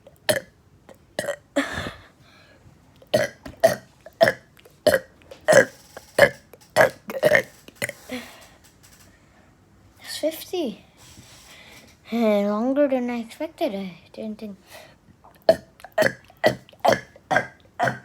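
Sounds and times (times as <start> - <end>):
person burping: 0.2 - 0.5, 1.2 - 2.1, 3.0 - 8.2, 15.3 - 18.0.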